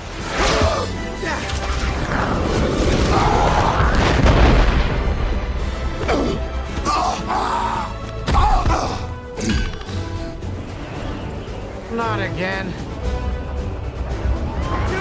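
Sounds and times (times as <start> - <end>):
action film music score: 0.0 - 15.0
heavy booms and crashing impacts: 1.4 - 6.8.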